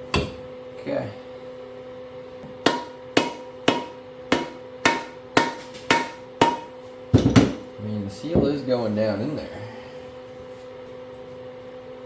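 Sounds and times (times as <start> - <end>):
hammer striking metal driver: 2.6 - 7.7.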